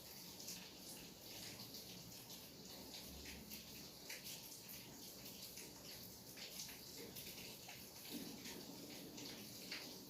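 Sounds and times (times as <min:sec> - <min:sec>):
faint steady rain hiss: 0:00.0 - 0:10.0.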